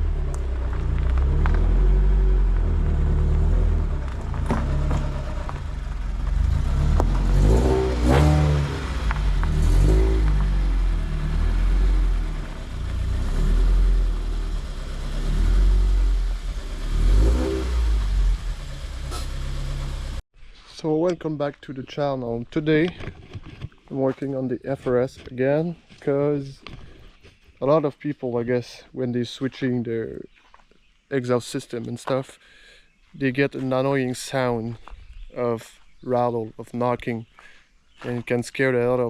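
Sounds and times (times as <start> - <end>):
car engine revving: 0.0 - 20.2.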